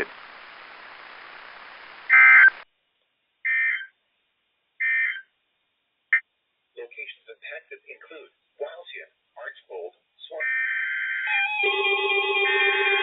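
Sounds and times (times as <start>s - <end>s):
digital data tone bursts: 0.0s - 2.6s
radio hiss: 0.0s - 2.6s.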